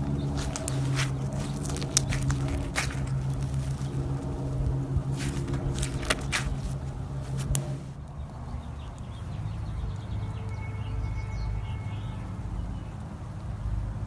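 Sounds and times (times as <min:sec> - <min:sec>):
slime crackling and popping: 0:00.0 - 0:09.2
steady low hum: 0:00.0 - 0:14.0.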